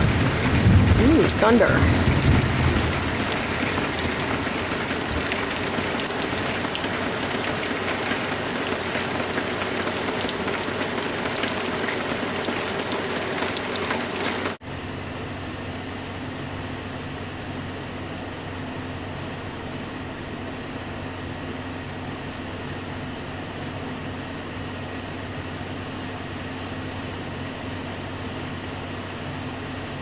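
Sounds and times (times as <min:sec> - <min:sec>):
heavy rain falling: 0:00.0 - 0:14.6
softer rain: 0:00.0 - 0:14.6.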